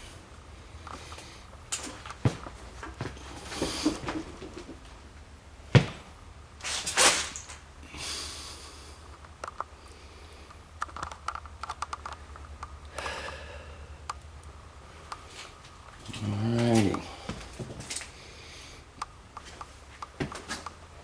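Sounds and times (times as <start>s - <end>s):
footsteps and handling clicks: 0.8s - 4.9s, 9.1s - 9.8s, 10.4s - 12.9s, 14.0s - 18.2s, 19.0s - 20.9s
person breathing hard: 7.8s - 9.2s, 12.9s - 14.1s, 17.0s - 19.0s.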